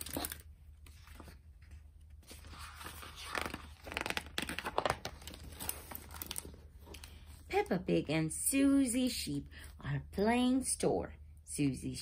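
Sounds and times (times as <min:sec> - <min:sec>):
book pages turning: 0:00.0 - 0:07.5.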